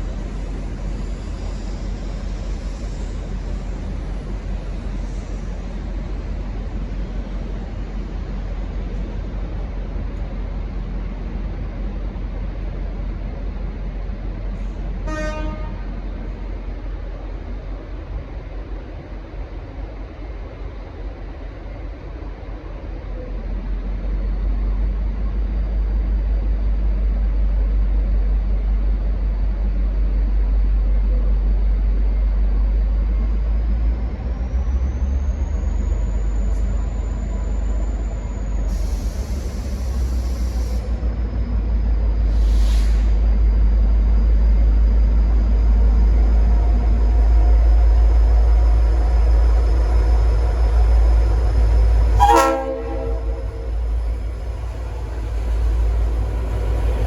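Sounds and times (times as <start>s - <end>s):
diesel locomotive rumbling: 0.0s - 57.0s
air hiss: 38.7s - 41.1s, 42.2s - 43.5s
high engine whine: 44.0s - 57.0s.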